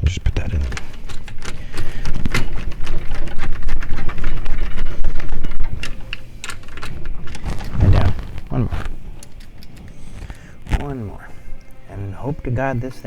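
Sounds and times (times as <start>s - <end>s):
screwdriver and metal parts clicking: 0.6s - 7.8s.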